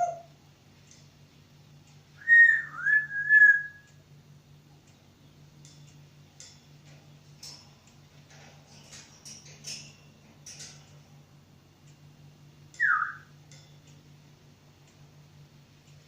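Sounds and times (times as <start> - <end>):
talking bird whistling: 2.2 - 4.0, 12.8 - 13.3.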